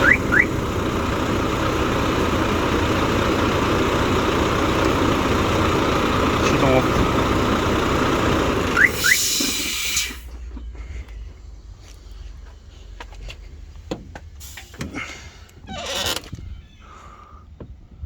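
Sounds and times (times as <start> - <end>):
truck diesel engine running: 0.0 - 17.4
short rising chirps: 8.7 - 10.2
burst of hiss: 9.0 - 10.3.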